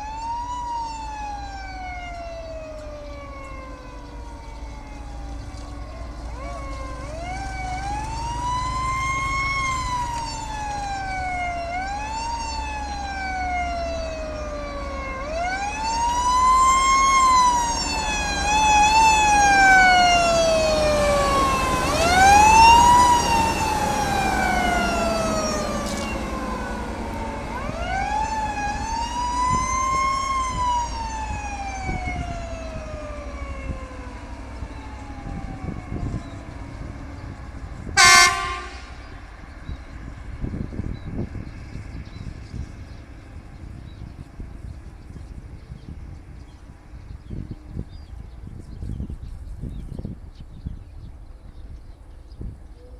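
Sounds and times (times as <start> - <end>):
siren wailing: 0.0 - 41.2.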